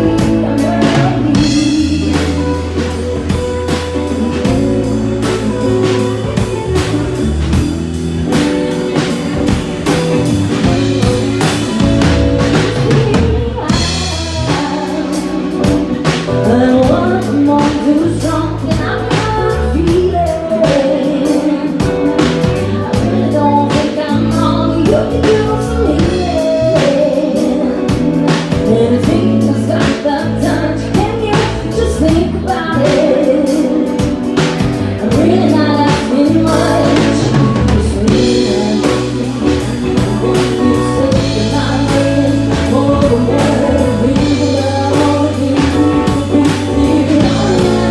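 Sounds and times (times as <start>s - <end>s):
drum beat: 0.0s - 17.9s
bass line: 0.0s - 47.9s
person singing: 0.0s - 47.9s.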